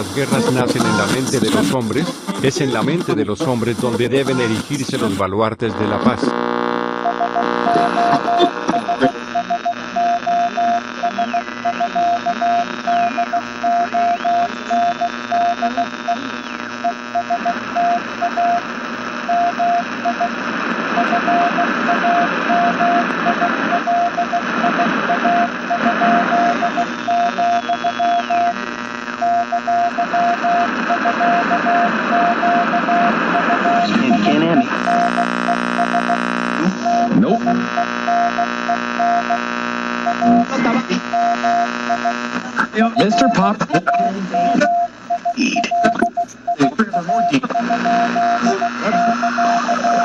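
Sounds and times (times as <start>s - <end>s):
radio static: 0.0s - 50.0s
morse code beeps: 7.1s - 18.6s, 19.2s - 20.3s, 21.0s - 28.6s, 29.2s - 36.2s, 36.8s - 39.4s, 40.0s - 40.5s, 41.1s - 42.2s, 42.9s - 50.0s.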